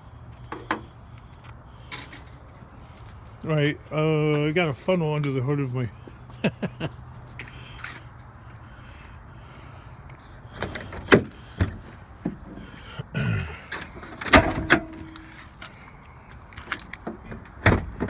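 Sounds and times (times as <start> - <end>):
clunks and knocks: 13.7 - 15.4.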